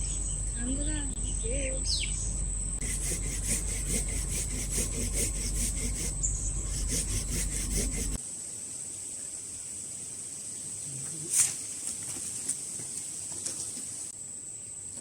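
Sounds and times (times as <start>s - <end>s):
hand saw cutting wood: 2.8s - 8.2s.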